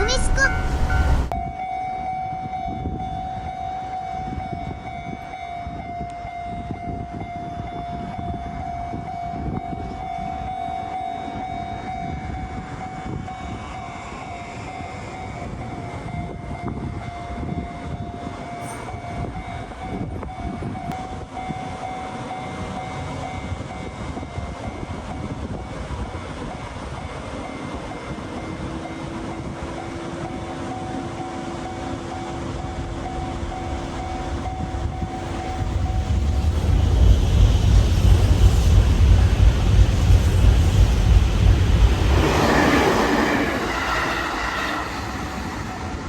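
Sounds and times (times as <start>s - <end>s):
passing train rumble: 0.0s - 46.0s
level-crossing warning bell: 0.1s - 36.3s.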